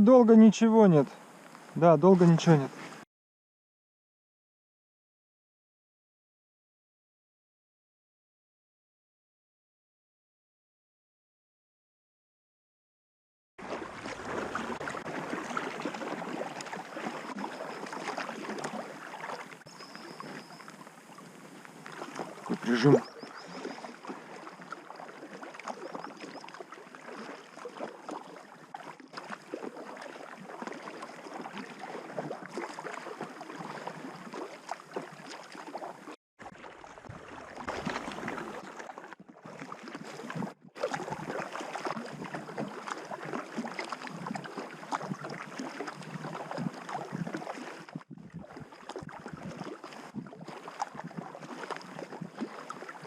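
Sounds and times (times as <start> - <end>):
water splashing and lapping: 0.0 - 3.0, 13.6 - 53.0.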